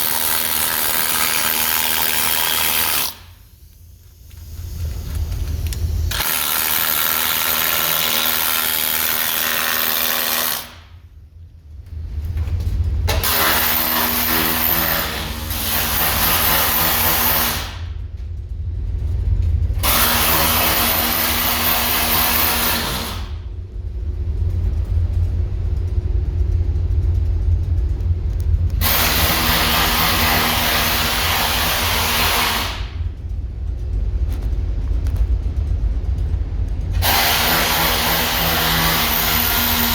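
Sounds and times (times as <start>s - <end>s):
steady low rumble: 0.0s - 39.9s
handheld power tool bursts: 37.0s - 39.9s.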